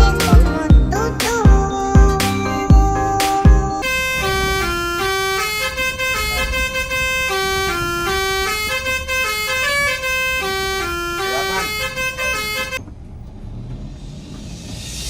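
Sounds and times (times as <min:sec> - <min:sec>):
music with heavy bass kicks: 0:00.0 - 0:03.8
bus horn playing a melody: 0:00.0 - 0:12.8.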